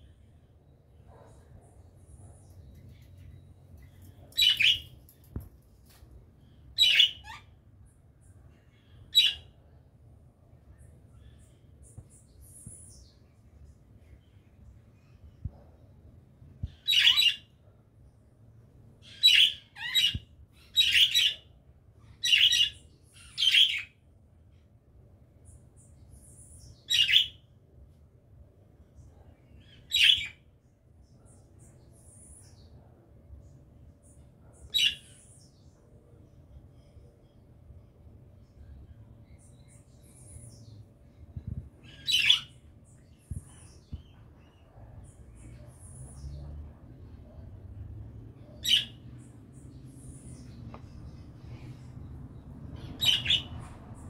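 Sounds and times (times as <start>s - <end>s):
parrot squawking: 6.8s - 7.5s, 53.0s - 53.5s
loud bird calls: 52.8s - 53.6s.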